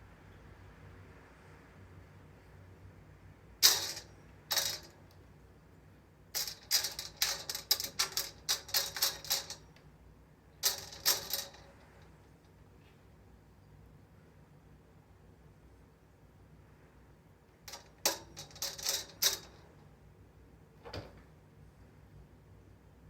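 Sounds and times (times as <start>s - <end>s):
curtain runners clicking and rattling: 3.6s - 5.1s, 6.4s - 9.8s, 10.6s - 12.3s, 17.7s - 19.8s.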